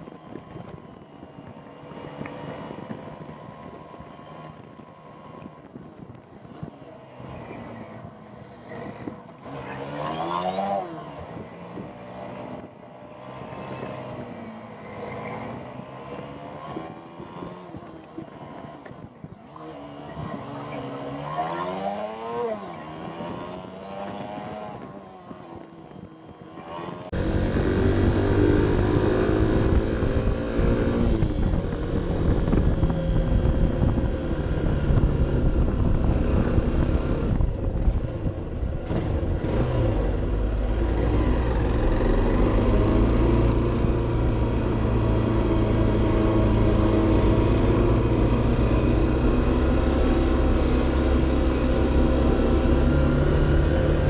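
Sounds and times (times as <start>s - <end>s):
wind rumble on microphone: 0.0s - 9.5s, 11.2s - 12.8s, 15.4s - 21.1s, 27.1s - 54.0s
motorcycle engine revving: 25.6s - 54.0s.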